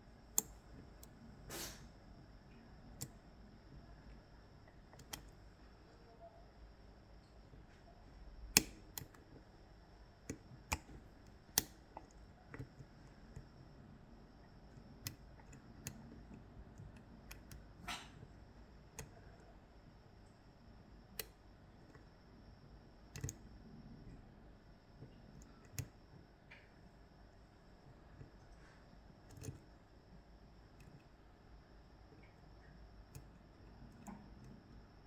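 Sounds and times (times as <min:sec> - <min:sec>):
lock picking clicks: 0:08.4 - 0:09.3, 0:10.3 - 0:13.5, 0:23.1 - 0:23.5, 0:29.2 - 0:29.7.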